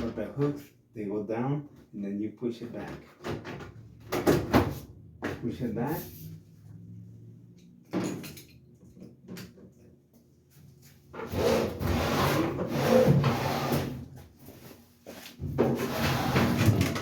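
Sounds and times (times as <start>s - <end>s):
panel scraping against cabinet: 11.2s - 14.0s, 15.6s - 17.0s.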